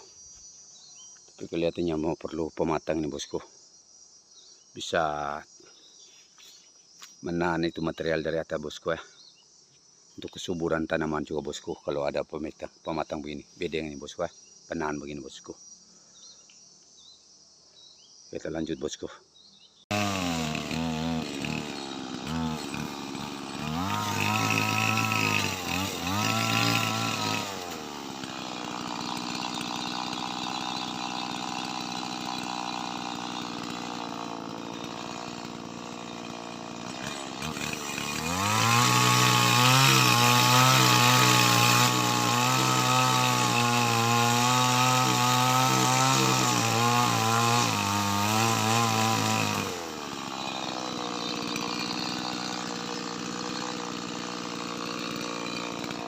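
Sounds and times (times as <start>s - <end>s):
chainsaw cutting wood: 19.9s - 56.0s
chainsaw idling: 19.9s - 56.0s.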